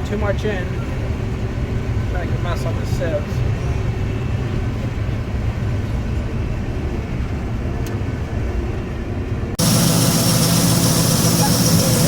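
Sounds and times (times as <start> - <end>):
combine harvester engine humming: 0.0 - 12.0
harsh machine noise: 9.6 - 12.0.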